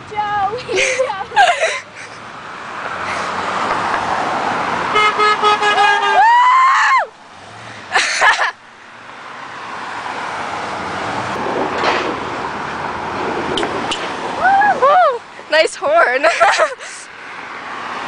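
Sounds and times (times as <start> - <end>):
passing car road noise: 0.0 - 18.0
car horn short toots: 4.9 - 6.2.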